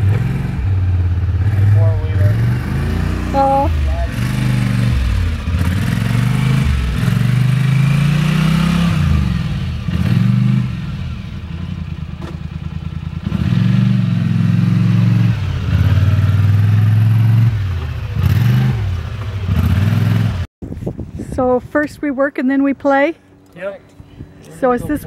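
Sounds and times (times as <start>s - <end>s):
atv engine revving: 0.0s - 20.5s.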